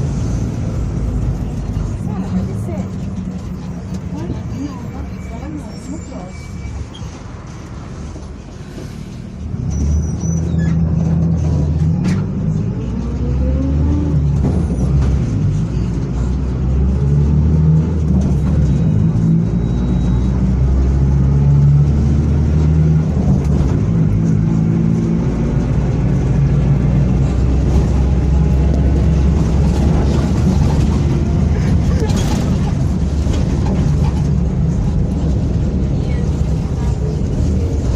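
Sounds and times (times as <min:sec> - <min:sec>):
bus diesel engine accelerating: 0:00.0 - 0:37.9.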